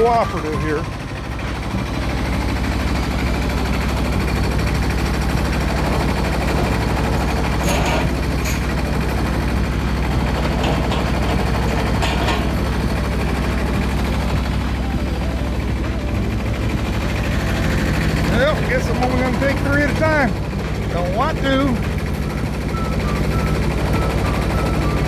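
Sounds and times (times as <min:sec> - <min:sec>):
engine running steadily: 0:00.0 - 0:25.0
sharp knocks or clanks: 0:05.9 - 0:14.0.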